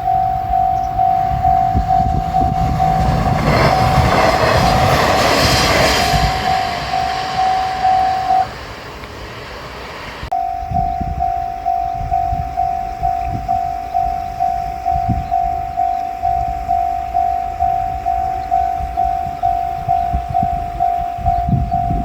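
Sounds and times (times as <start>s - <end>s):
railroad crossing bell ringing: 0.0s - 9.1s, 10.2s - 22.0s
low engine rumble: 0.0s - 22.0s
train passing: 0.0s - 22.0s.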